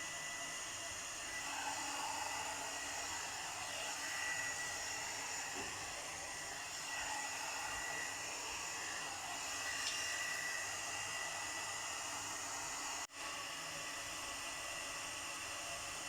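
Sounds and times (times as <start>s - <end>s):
hair dryer brush blowing: 0.0s - 16.0s.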